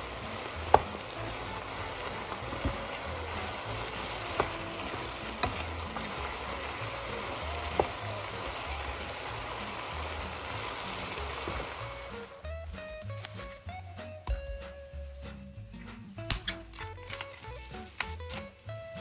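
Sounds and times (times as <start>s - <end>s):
meat sizzling in hot fat: 0.0s - 13.5s.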